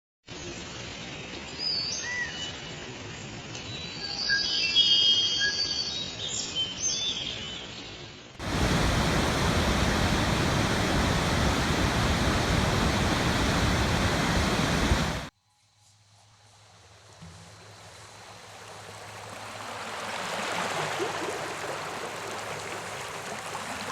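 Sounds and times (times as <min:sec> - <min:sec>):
faint rush of water: 0:08.4 - 0:15.3, 0:16.5 - 0:23.9
waterfall roaring: 0:08.4 - 0:15.3.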